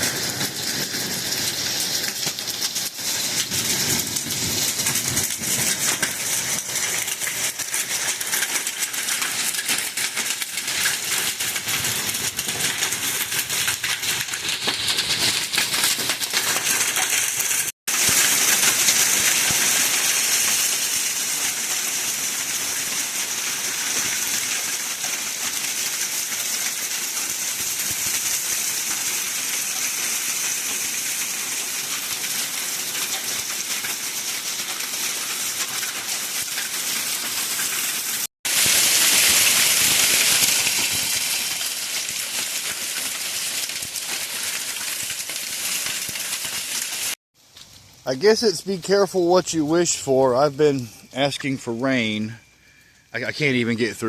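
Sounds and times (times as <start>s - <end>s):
heavy rain hissing: 0.0s - 8.3s, 16.8s - 47.2s, 48.1s - 54.0s
hailstones clattering: 0.0s - 48.3s.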